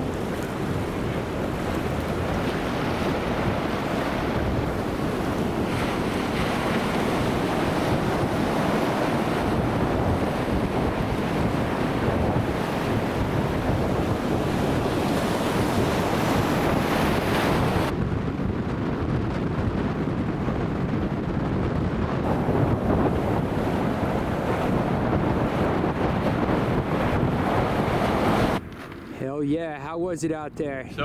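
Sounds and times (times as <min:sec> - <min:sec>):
ocean surf breaking: 0:00.0 - 0:17.9, 0:22.2 - 0:28.6
wind buffeting microphone: 0:00.0 - 0:31.0.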